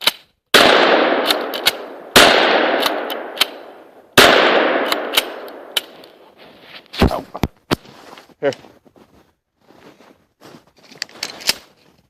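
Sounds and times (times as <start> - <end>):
shotgun blasts with echo: 0.5 - 6.0.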